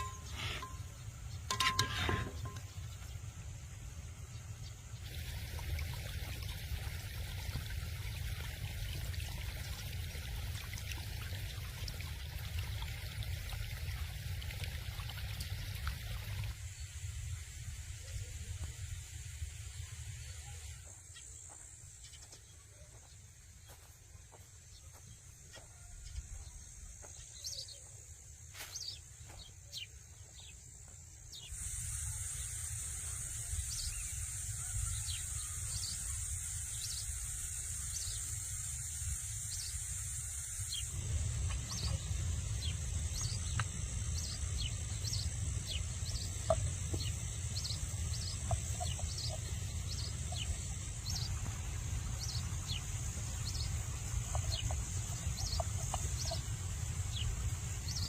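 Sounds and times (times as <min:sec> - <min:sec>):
steady high hiss: 0:00.0 - 0:11.8, 0:15.3 - 0:25.8, 0:26.4 - 0:58.0
small birds chirping: 0:20.2 - 0:38.7, 0:39.4 - 0:58.0.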